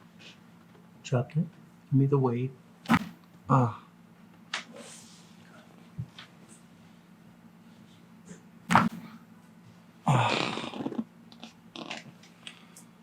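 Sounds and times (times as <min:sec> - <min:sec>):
sharp neck joint crack: 0:02.9 - 0:03.2, 0:08.7 - 0:09.2.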